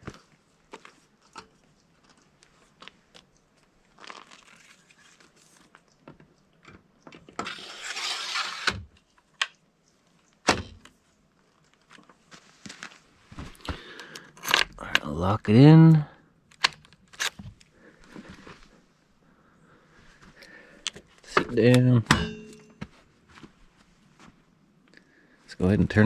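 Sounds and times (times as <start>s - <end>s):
battery scraping slide: 7.4s - 8.8s.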